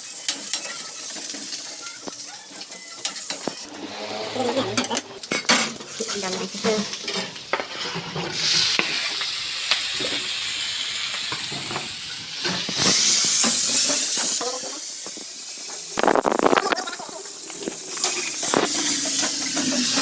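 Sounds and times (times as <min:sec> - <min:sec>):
potatoes sizzling in hot oil: 0:00.0 - 0:04.0, 0:05.0 - 0:20.0
spatula scraping pan: 0:03.3 - 0:09.1.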